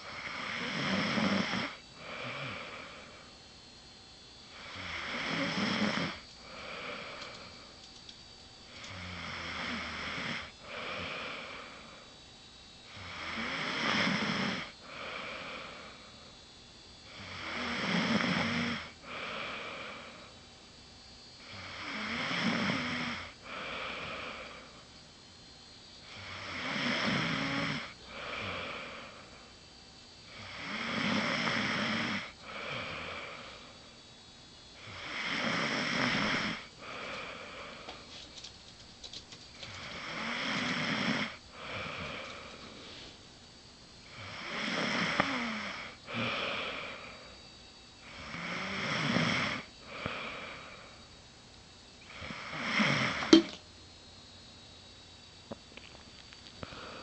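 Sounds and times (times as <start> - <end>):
woman snoring loudly: 0.0 - 3.3, 4.5 - 7.6, 8.7 - 12.1, 12.9 - 16.2, 17.1 - 20.3, 21.4 - 24.8, 26.0 - 29.4, 30.3 - 33.8, 34.8 - 37.9, 39.7 - 42.7, 44.0 - 47.4, 48.0 - 51.0, 52.1 - 53.5.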